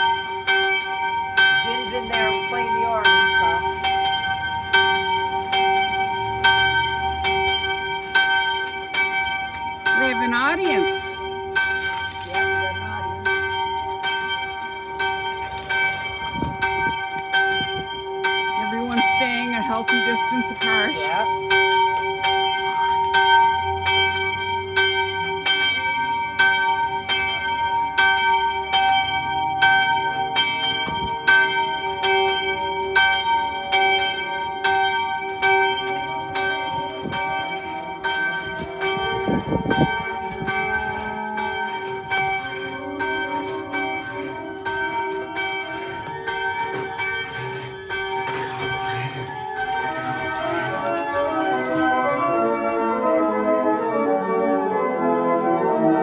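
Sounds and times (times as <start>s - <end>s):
church bells ringing: 0.0s - 56.0s.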